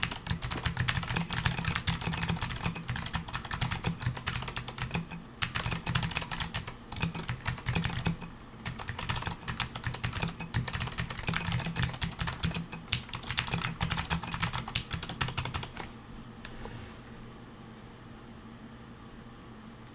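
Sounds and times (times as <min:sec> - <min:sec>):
mechanical keyboard typing: 0:00.0 - 0:15.8.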